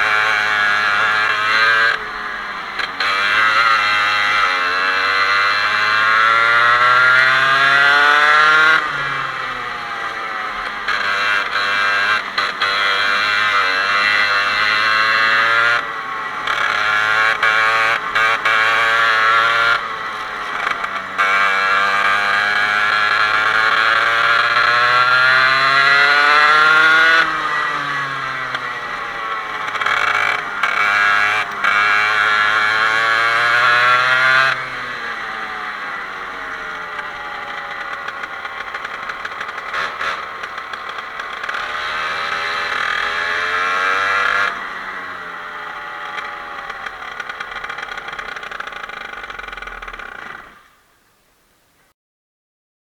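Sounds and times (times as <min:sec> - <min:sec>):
kart engine revving: 0:00.0 - 0:51.0.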